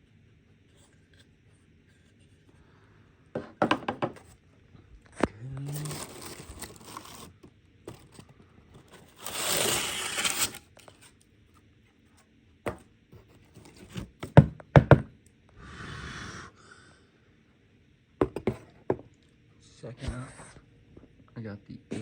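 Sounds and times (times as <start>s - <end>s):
hard objects knocking and clicking: 3.4s - 4.3s, 18.2s - 19.1s
packaging tearing and crinkling: 5.7s - 8.2s, 8.8s - 11.1s.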